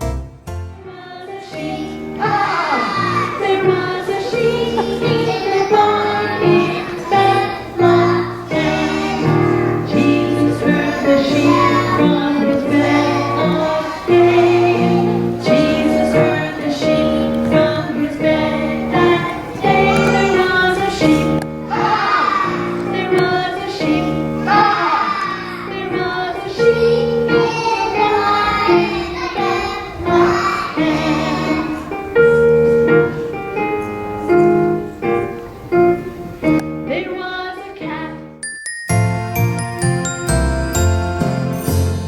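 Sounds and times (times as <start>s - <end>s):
children singing: 0.8s - 38.4s
instrumental accompaniment: 37.9s - 42.0s.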